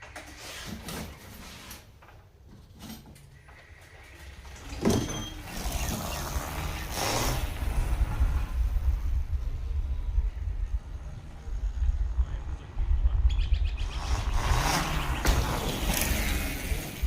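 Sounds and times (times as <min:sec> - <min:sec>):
dirt bike riding noise: 0:00.0 - 0:17.0
wind buffeting microphone: 0:05.4 - 0:17.0.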